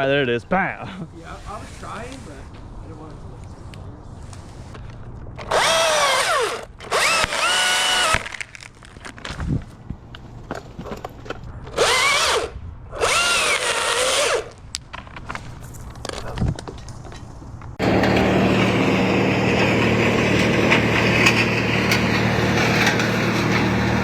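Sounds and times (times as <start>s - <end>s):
chainsaw revving: 5.4s - 8.4s, 11.8s - 14.5s, 17.8s - 24.0s
machine drone with low hum: 17.6s - 24.0s.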